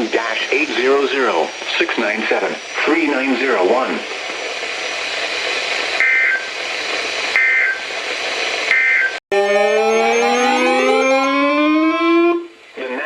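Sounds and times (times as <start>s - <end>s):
radio hiss: 0.0s - 9.0s
warbling two-tone data bursts: 9.3s - 11.4s
rising chord of many tones: 9.3s - 11.6s.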